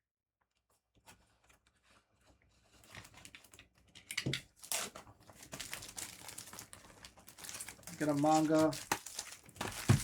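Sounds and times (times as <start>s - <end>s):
plastic packaging crinkling and tearing: 4.6s - 10.0s.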